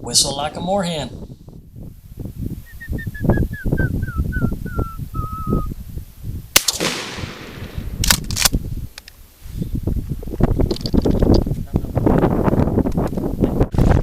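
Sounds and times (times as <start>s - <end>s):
person whistling bird call: 2.7s - 5.7s
sharp crack: 6.6s - 9.2s.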